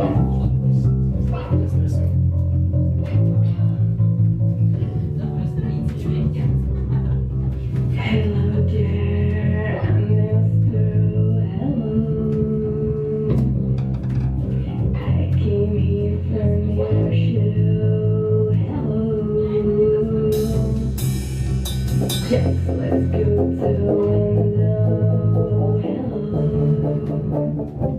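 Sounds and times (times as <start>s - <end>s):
rock band playing live: 20.3s - 27.9s.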